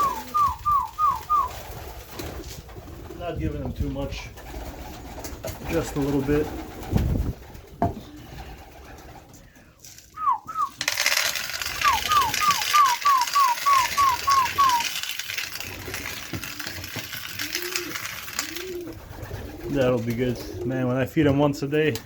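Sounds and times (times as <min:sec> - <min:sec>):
person whistling: 0:00.0 - 0:01.5, 0:10.2 - 0:10.8, 0:11.8 - 0:14.9
pigeons cooing: 0:00.0 - 0:03.2, 0:04.4 - 0:09.5, 0:10.3 - 0:20.8.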